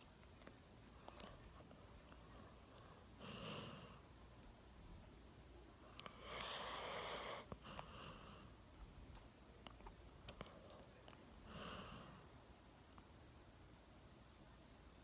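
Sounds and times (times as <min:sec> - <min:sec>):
dog snoring faintly: 0:00.9 - 0:04.1, 0:05.8 - 0:08.6, 0:10.3 - 0:12.4.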